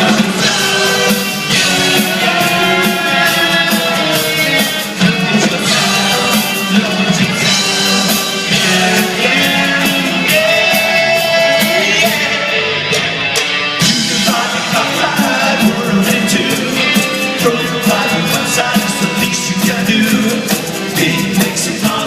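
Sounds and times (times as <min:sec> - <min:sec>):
person singing: 0:00.0 - 0:13.0, 0:13.8 - 0:22.0
guitar: 0:00.0 - 0:22.0
steady drum beat: 0:00.0 - 0:22.0.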